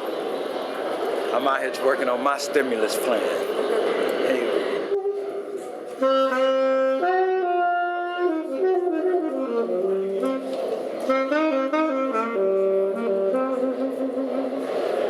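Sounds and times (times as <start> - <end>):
saxophone solo melody: 6.0 - 15.0.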